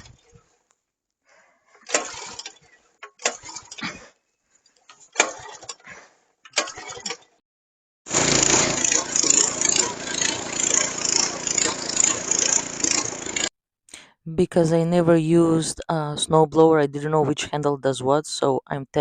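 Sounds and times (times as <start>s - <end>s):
short rasping bursts: 8.1s - 13.5s
snowblower engine running: 8.1s - 13.5s.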